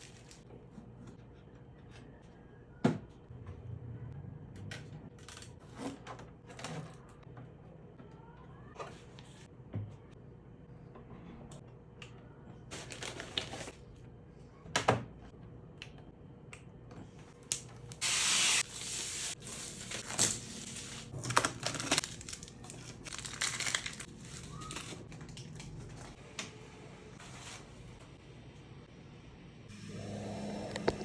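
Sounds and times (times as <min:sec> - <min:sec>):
plastic and cardboard rustling: 0:12.7 - 0:13.8, 0:18.6 - 0:26.2.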